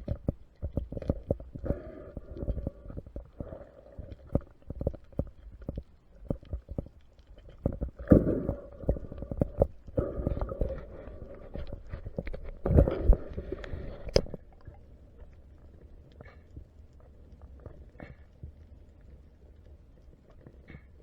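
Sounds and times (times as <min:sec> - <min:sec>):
underwater crackling clicks: 0:00.0 - 0:15.4.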